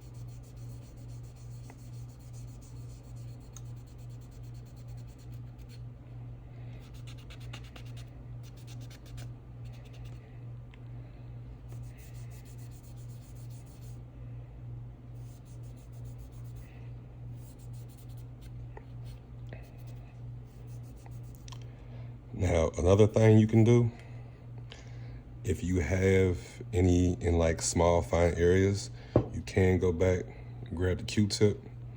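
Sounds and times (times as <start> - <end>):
scratchy rubbing and scraping: 0.0 - 5.8, 6.8 - 10.2, 11.7 - 14.0, 15.2 - 16.7, 17.4 - 21.4
pulsing low hum: 0.0 - 22.4.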